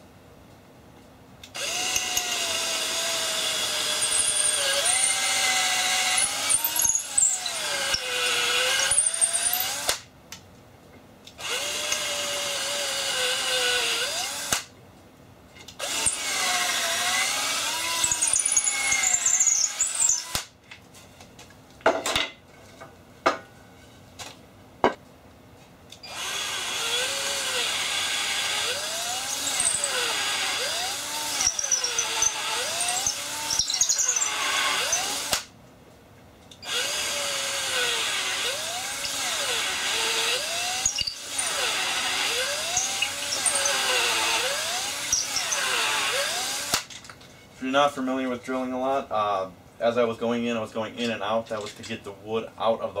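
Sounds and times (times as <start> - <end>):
power drill boring into wood: 1.6 - 10.0, 11.4 - 14.7, 15.8 - 20.5, 26.0 - 35.5, 36.6 - 46.9.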